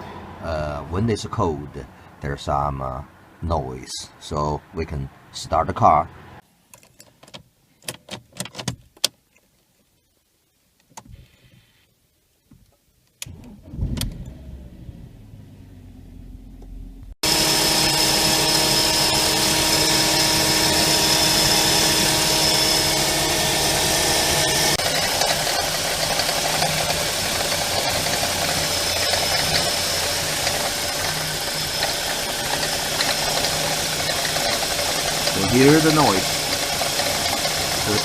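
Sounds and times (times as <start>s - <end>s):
car engine starting and idling: 13.2s - 38.0s
engine whine: 13.3s - 38.0s.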